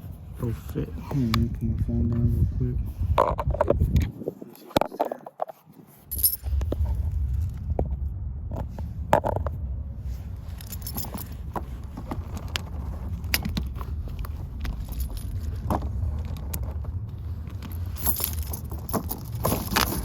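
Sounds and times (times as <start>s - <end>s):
low steady rumble: 0.0s - 4.3s, 5.9s - 20.0s
metal chain links clinking: 6.1s - 6.7s, 10.5s - 11.5s, 14.4s - 16.7s, 17.5s - 20.0s.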